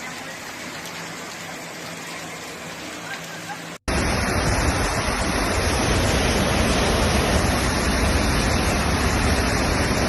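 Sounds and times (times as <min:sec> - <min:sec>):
floodwater rushing: 0:00.0 - 0:10.0
deep rumble: 0:03.9 - 0:10.0.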